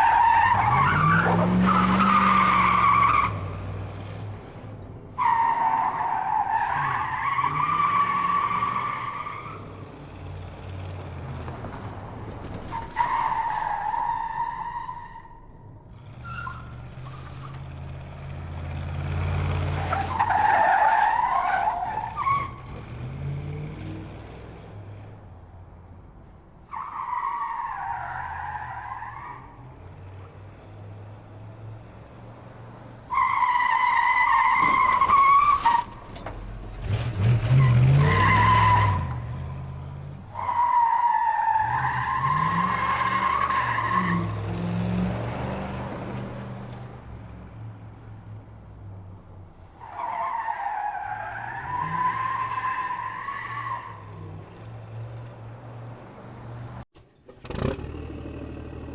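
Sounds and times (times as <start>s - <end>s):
tyres screeching: 33.0s - 44.8s.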